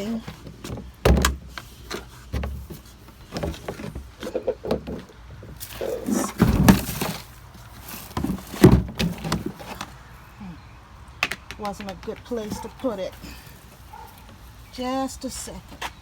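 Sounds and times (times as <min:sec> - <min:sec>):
rustling and scraping: 0:00.0 - 0:10.1
knocks of gardening containers: 0:00.1 - 0:07.3, 0:08.1 - 0:09.9.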